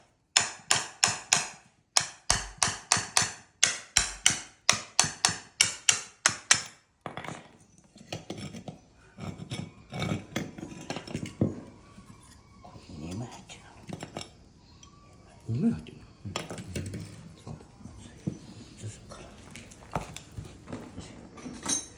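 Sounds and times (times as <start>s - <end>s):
hammer striking metal: 0.4s - 6.8s
metal parts clattering: 19.6s - 21.9s.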